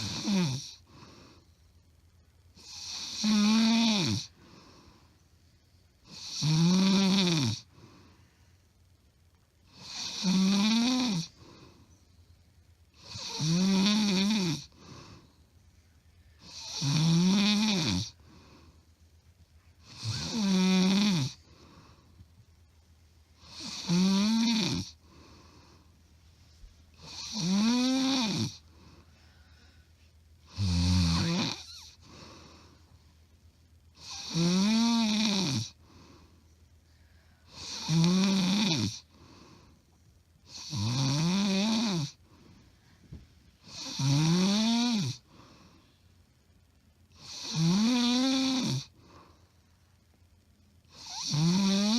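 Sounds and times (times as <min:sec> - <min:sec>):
woman snoring loudly: 0:00.0 - 0:00.9, 0:02.6 - 0:04.4, 0:06.1 - 0:07.7, 0:09.7 - 0:11.4, 0:13.0 - 0:14.8, 0:16.4 - 0:18.2, 0:19.8 - 0:21.5, 0:23.4 - 0:25.0, 0:27.0 - 0:28.6, 0:30.4 - 0:32.3, 0:34.0 - 0:35.8, 0:37.5 - 0:39.1, 0:40.5 - 0:42.2, 0:43.6 - 0:45.3, 0:47.2 - 0:49.0, 0:50.9 - 0:51.9
quiet breathing: 0:00.0 - 0:03.1, 0:03.9 - 0:06.3, 0:07.6 - 0:09.8, 0:11.2 - 0:13.4, 0:14.3 - 0:16.8, 0:17.7 - 0:20.4, 0:21.1 - 0:23.8, 0:24.7 - 0:27.3, 0:28.5 - 0:34.0, 0:35.7 - 0:37.8, 0:38.5 - 0:40.5, 0:42.0 - 0:43.9, 0:45.2 - 0:47.3, 0:48.8 - 0:51.3.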